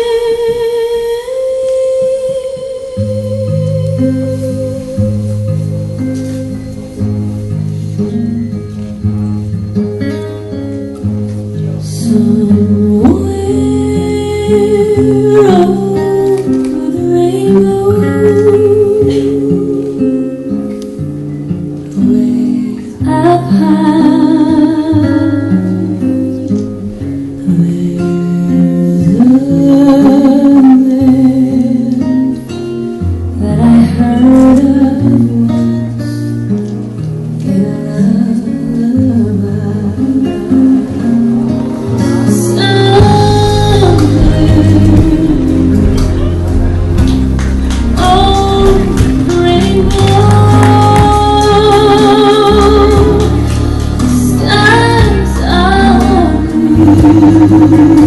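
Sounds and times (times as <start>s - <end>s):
person singing: 0.0s - 7.0s, 11.7s - 20.5s, 37.5s - 58.0s
guitar and bass music: 3.3s - 23.0s, 40.1s - 58.0s.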